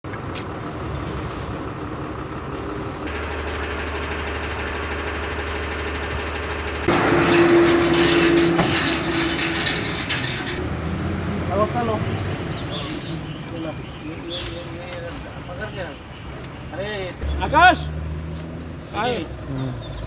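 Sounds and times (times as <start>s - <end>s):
traffic noise: 0.0s - 20.0s
vehicle engine running: 0.1s - 10.8s.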